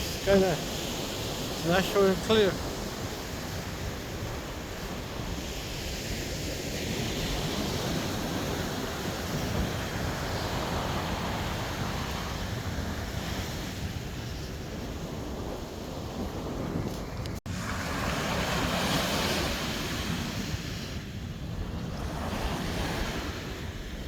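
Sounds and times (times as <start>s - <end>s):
ocean surf breaking on beach: 0.0s - 24.0s
wind buffeting microphone: 0.0s - 24.0s.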